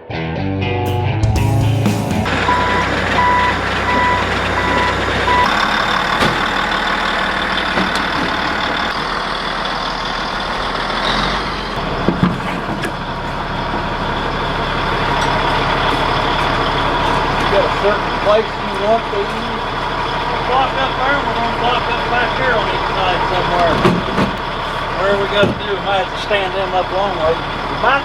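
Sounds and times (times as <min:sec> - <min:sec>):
diesel heavy equipment running: 0:01.1 - 0:28.0
backup alarm beeping: 0:02.3 - 0:06.8
metal clanks: 0:02.3 - 0:09.2, 0:11.8 - 0:19.8, 0:23.6 - 0:25.8.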